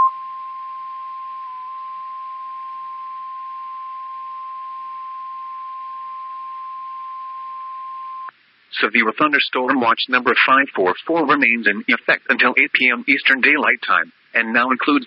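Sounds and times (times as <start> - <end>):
steady high alarm tone: 0.0 - 8.3.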